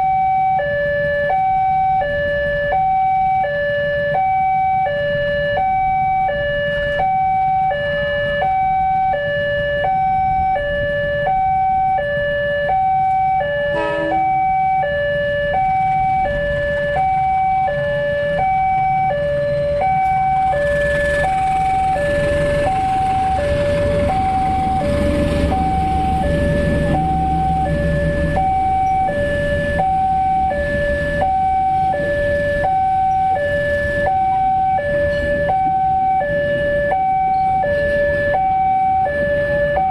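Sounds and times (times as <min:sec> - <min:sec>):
level crossing two-tone alarm: 0:00.0 - 0:39.9
train passing rumble: 0:15.5 - 0:35.8.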